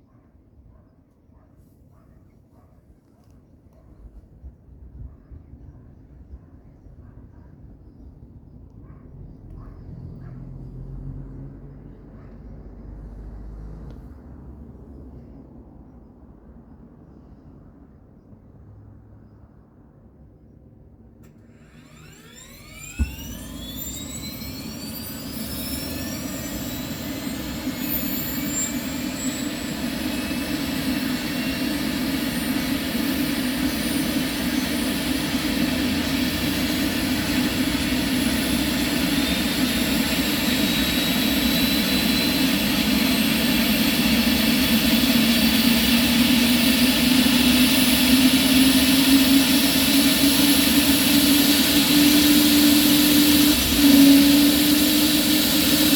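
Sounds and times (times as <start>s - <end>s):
helicopter engine whine rising: 21.3s - 55.9s
helicopter rotor spinning up: 21.4s - 55.9s.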